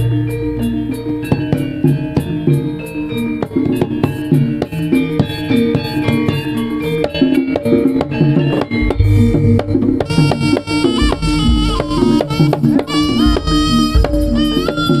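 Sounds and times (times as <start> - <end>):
drums and pitched percussion: 0.0 - 15.0
deep low boom: 8.8 - 10.2.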